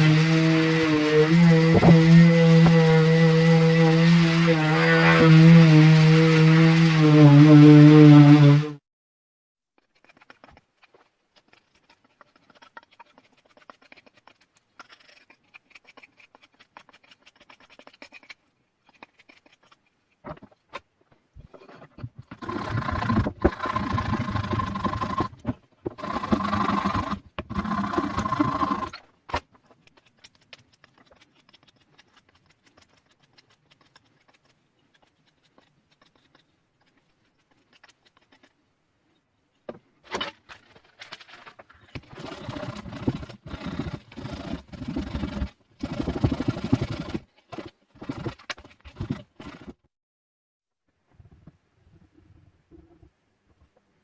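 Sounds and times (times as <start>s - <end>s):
power tool cutting wood: 0.0s - 8.8s, 26.0s - 29.0s.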